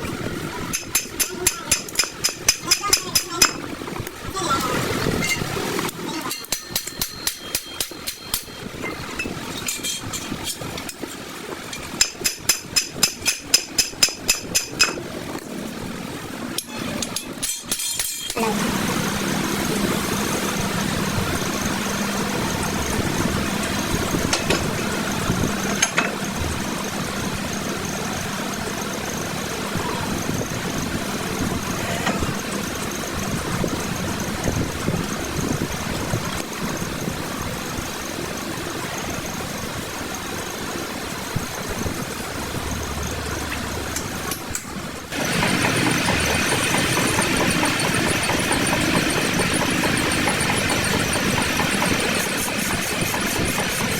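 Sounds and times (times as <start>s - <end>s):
loud machine running: 18.4s - 44.4s, 45.0s - 53.9s
metal lathe running: 45.1s - 53.9s.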